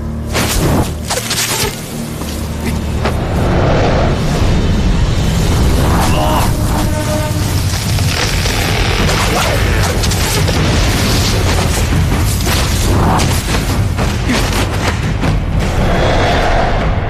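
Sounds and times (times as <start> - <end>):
dramatic soundtrack: 0.0 - 17.0
rushing noise: 2.8 - 8.5, 15.1 - 17.0.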